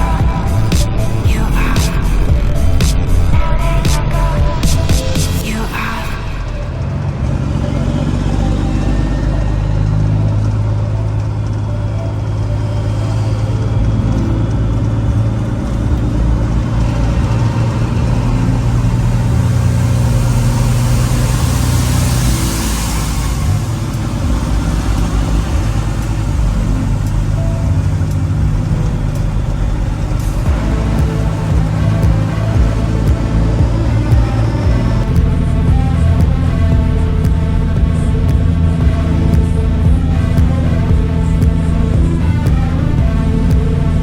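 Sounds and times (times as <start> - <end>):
diesel truck engine drone: 0.0 - 44.0
hissing rush: 15.8 - 44.0.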